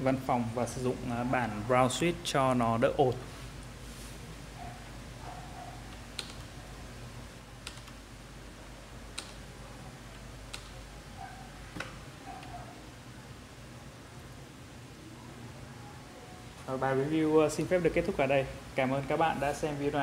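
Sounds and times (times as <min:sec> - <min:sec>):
low steady hum: 0:00.0 - 0:20.0.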